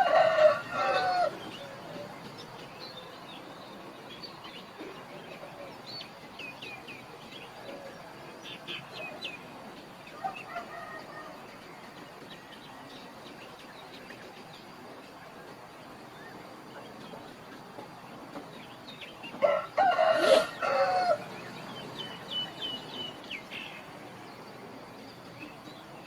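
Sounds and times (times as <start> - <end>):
outdoor background noise: 0.0 - 26.0
small birds chirping: 0.4 - 26.0
chicken calling: 19.4 - 21.4.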